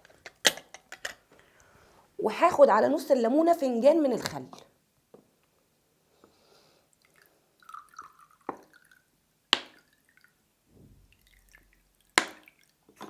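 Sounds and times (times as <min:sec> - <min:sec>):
liquid trickling into a cup: 0:06.9 - 0:10.4, 0:11.1 - 0:12.9.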